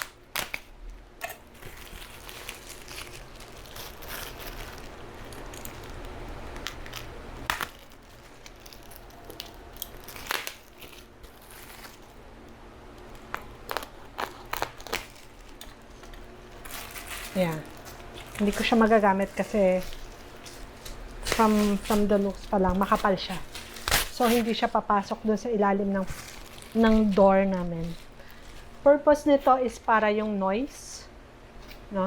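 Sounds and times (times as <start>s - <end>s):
plastic packaging crinkling: 0.0s - 30.0s.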